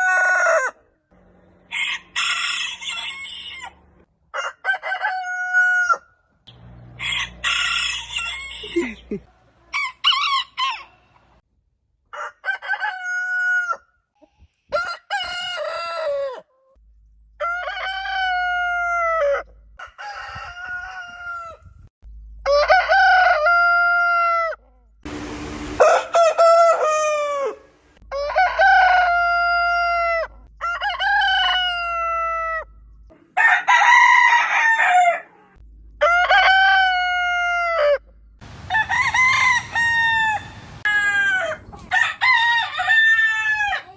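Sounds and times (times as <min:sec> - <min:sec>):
roosters crowing: 0:00.0 - 0:00.8, 0:01.6 - 0:09.0, 0:12.1 - 0:13.9, 0:14.7 - 0:16.4, 0:17.4 - 0:21.7, 0:22.4 - 0:32.7, 0:33.4 - 0:35.3, 0:36.0 - 0:43.9.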